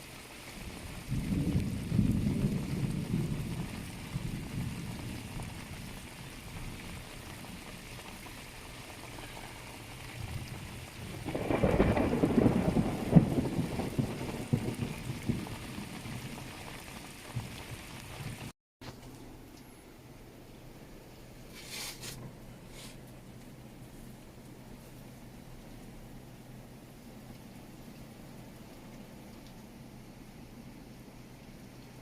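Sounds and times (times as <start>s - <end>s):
heavy rain: 0.0s - 18.5s
low rumble of thunder: 0.6s - 18.5s.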